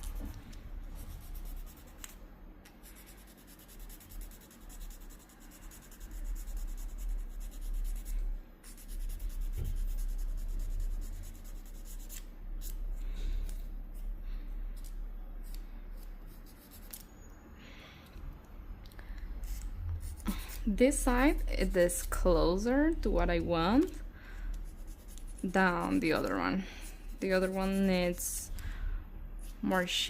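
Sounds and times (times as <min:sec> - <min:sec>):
nail file scraping: 0:00.0 - 0:02.2, 0:02.8 - 0:12.8, 0:14.8 - 0:17.1, 0:19.2 - 0:23.2, 0:23.8 - 0:28.6.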